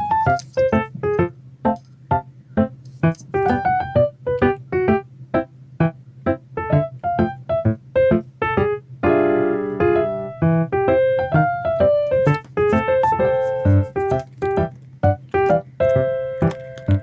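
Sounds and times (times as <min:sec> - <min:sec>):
bouncy staccato keyboard tune: 0:03.4 - 0:17.0.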